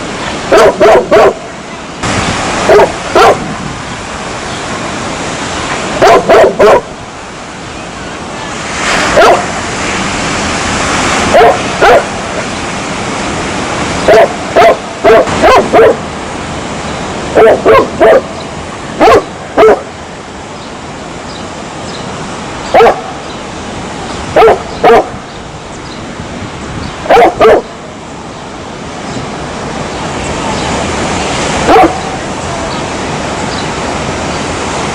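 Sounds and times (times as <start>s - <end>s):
dog barking: 0.5s - 1.4s, 2.6s - 3.5s, 6.0s - 6.9s, 9.1s - 9.5s, 11.3s - 12.1s, 14.1s - 16.0s, 17.4s - 18.3s, 19.0s - 19.9s, 22.7s - 23.1s, 24.4s - 25.2s, 27.1s - 27.7s, 31.6s - 32.1s.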